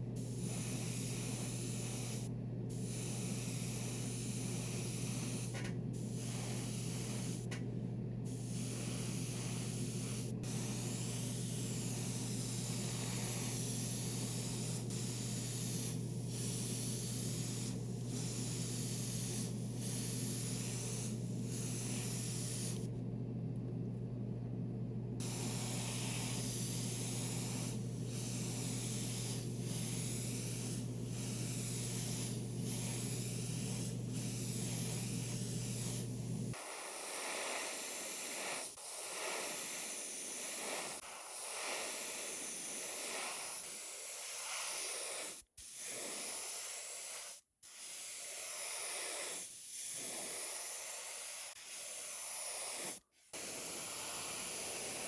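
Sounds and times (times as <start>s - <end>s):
low steady hum: 0.0s - 36.6s
airbrush spraying hiss: 0.2s - 7.6s, 8.2s - 22.9s, 25.2s - 55.0s.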